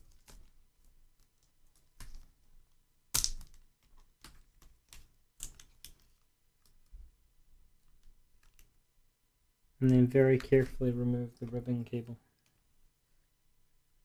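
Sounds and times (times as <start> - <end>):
fingers clicking on laptop plastic: 0.0 - 6.9, 7.8 - 8.8.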